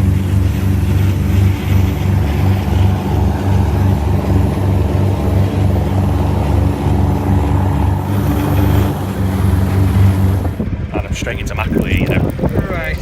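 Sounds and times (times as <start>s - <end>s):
boat engine running: 0.0s - 13.0s.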